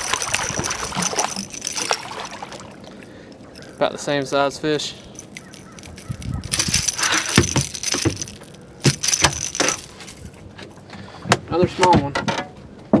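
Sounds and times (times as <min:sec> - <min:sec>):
clatter and knocks in boat: 0:00.0 - 0:02.4, 0:05.4 - 0:13.0.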